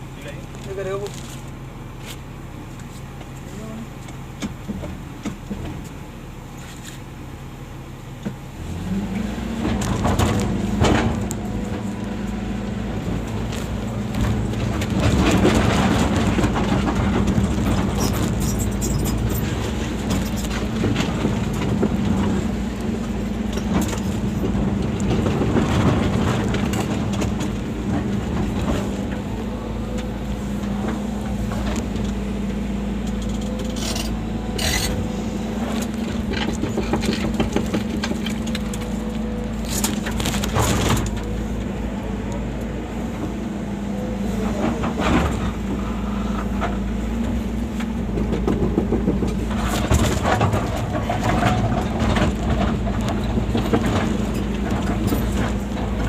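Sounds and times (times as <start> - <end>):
excavator diesel engine revving: 7.4 - 56.0
knocks and scrapes: 33.1 - 41.5, 44.4 - 56.0.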